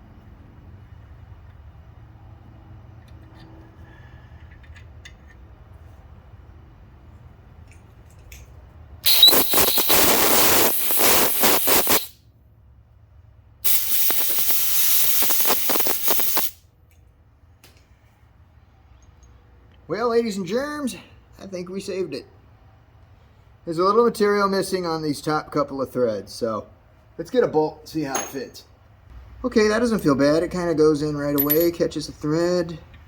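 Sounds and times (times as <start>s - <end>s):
pressurised air hissing blasts: 9.0s - 12.2s, 13.6s - 16.6s.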